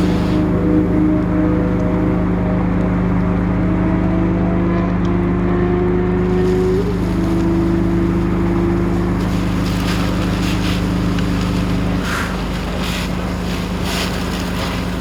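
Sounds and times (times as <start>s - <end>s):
hiss: 0.0s - 1.0s, 6.2s - 15.0s
engine idling: 0.0s - 3.2s, 6.2s - 15.0s.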